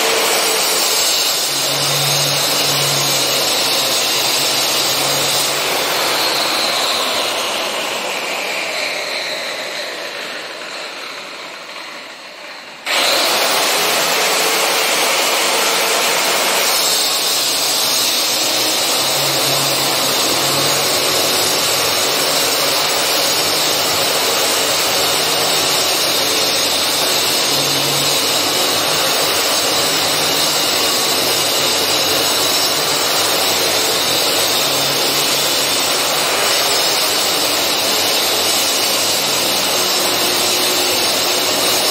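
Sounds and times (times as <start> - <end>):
power cutter cutting wall: 0.0 - 41.9.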